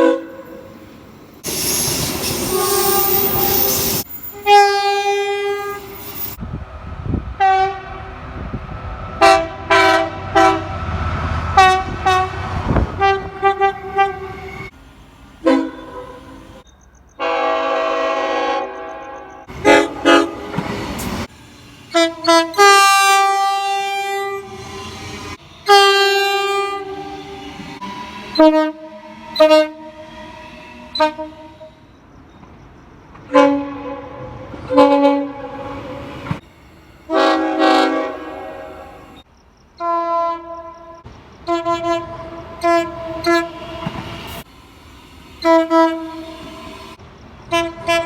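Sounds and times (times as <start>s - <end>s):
locomotive air horn blasts: 0.0s - 0.8s, 1.8s - 6.1s, 7.4s - 8.1s, 9.2s - 10.8s, 11.5s - 14.7s, 15.4s - 16.6s, 17.2s - 20.8s, 21.9s - 31.9s, 33.3s - 36.2s, 37.1s - 39.2s, 39.8s - 44.1s, 45.4s - 48.0s
passing train rushing: 0.0s - 39.4s, 40.2s - 48.0s.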